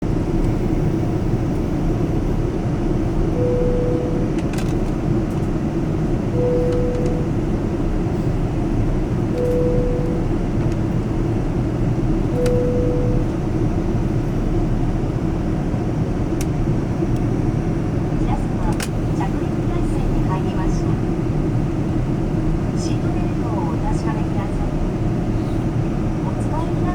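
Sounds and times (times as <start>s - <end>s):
airliner cabin rumble: 0.0s - 26.9s
soft cabin chime tone: 3.3s - 4.4s, 6.3s - 7.5s, 9.3s - 10.6s, 12.2s - 13.4s.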